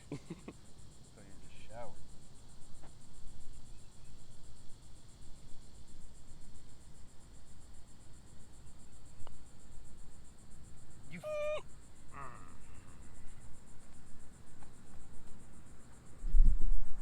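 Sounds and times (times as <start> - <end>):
insects chirring: 0.0 - 17.0
person shouting: 11.1 - 11.6, 12.2 - 12.6.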